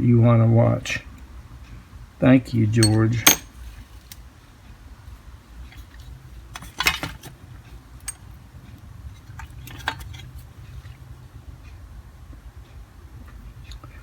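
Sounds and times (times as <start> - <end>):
metal tools clinking: 2.8 - 3.5.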